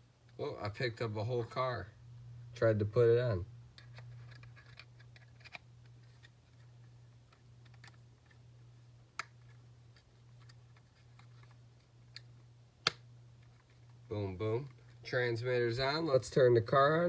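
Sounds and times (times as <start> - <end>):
low steady hum: 0.0 - 17.0
plastic parts clicking: 3.8 - 6.7, 7.3 - 8.4.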